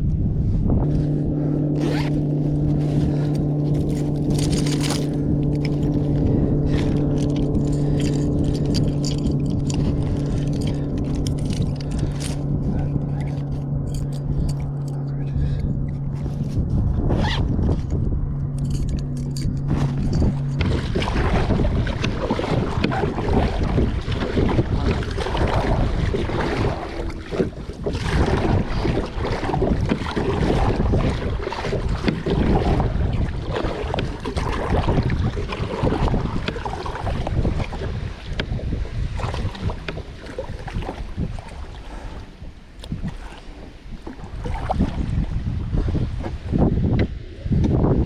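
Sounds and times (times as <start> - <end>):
choppy water: 0.0 - 48.0
low steady hum: 0.0 - 48.0
wind buffeting microphone: 0.0 - 48.0.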